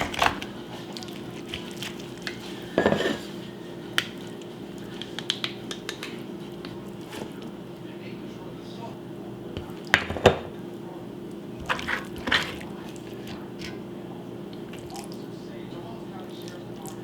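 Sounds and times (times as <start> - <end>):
utensils clinking against dishes: 1.4 - 3.3.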